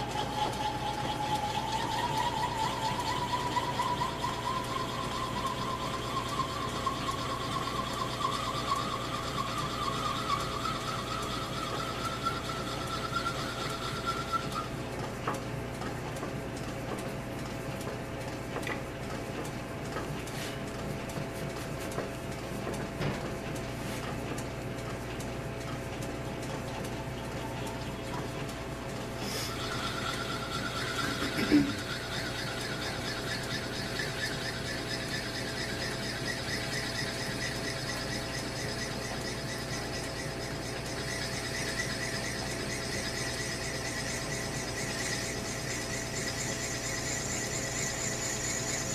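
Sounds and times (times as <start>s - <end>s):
thin high squeal: 0.0s - 14.7s, 29.2s - 48.9s
drill bit boring metal: 0.0s - 14.8s, 29.2s - 48.9s
lathe running: 0.0s - 17.0s, 25.6s - 48.9s.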